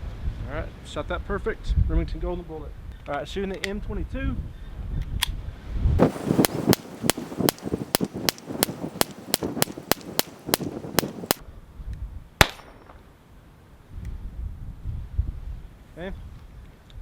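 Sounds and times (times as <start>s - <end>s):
pistol shots: 6.4s - 11.4s, 12.4s - 13.0s.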